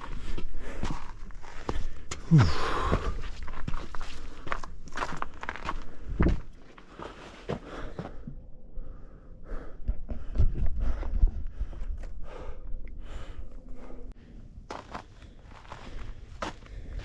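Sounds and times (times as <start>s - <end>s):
footsteps on rocky trail: 0.0s - 8.3s, 9.6s - 12.6s, 14.6s - 17.0s
heavy breathing: 0.1s - 4.8s, 5.7s - 14.5s.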